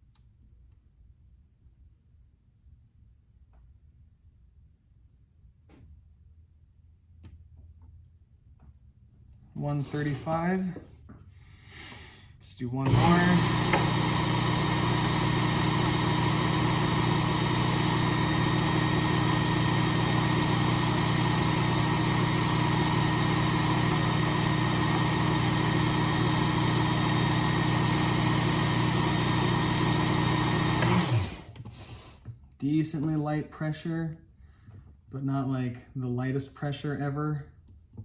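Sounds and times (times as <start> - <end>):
motor winding down: 9.7 - 10.8, 12.8 - 32.1
belt sharpener grinding knife: 9.8 - 10.7.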